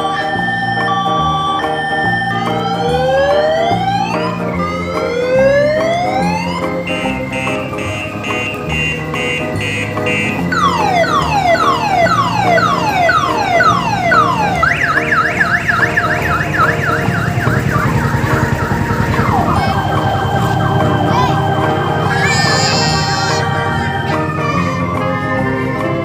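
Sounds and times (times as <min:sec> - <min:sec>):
electronic siren wailing and yelping: 0:00.4 - 0:25.0.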